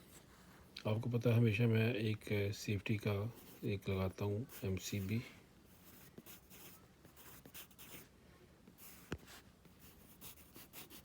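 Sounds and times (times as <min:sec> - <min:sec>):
pen scratching on paper: 0:05.7 - 0:08.1, 0:08.8 - 0:11.0.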